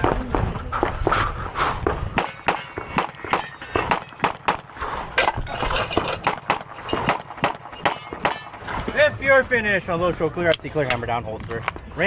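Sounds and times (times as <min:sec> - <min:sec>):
steel targets ringing: 0:02.2 - 0:04.2.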